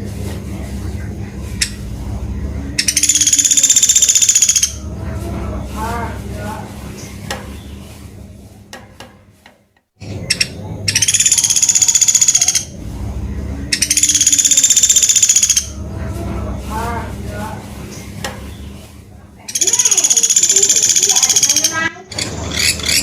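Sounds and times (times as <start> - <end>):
weak warbling bird notes: 0.0 - 8.7, 10.0 - 23.0
steady low hum: 0.0 - 23.0
woodpecker trills: 2.8 - 4.9, 10.0 - 12.8, 13.8 - 15.8, 19.5 - 23.0.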